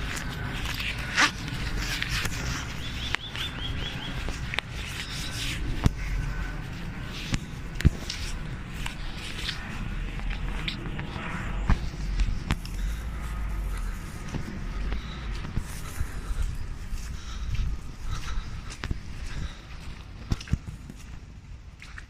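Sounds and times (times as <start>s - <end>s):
footsteps on trackbed: 0.0s - 22.0s
low rumble: 0.0s - 22.0s
bird chirping: 2.5s - 4.4s.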